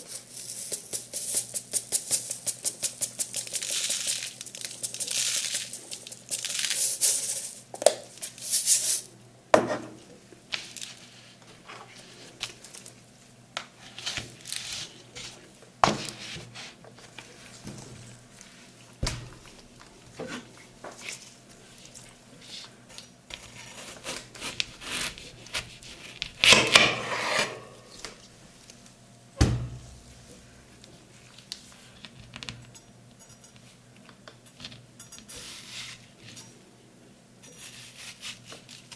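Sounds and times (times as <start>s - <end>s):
metal spatulas scraping plate: 26.4s - 27.9s.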